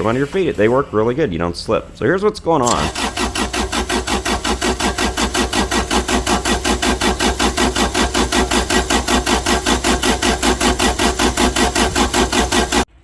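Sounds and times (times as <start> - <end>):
generator engine cranking: 2.6 - 13.0.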